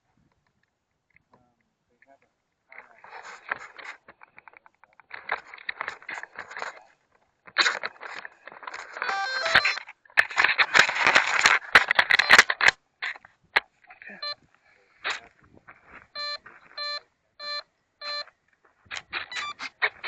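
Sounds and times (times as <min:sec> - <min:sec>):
rustling and handling clicks: 0:02.6 - 0:13.7, 0:18.2 - 0:20.0
short electronic beeps: 0:09.0 - 0:09.8, 0:16.2 - 0:18.3, 0:19.2 - 0:19.6.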